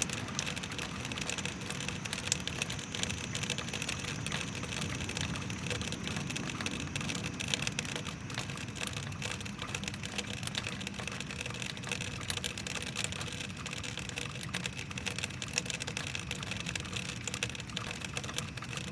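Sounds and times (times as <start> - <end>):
rain hiss: 0.0 - 18.9
rainwater clacking off roof: 0.0 - 18.9.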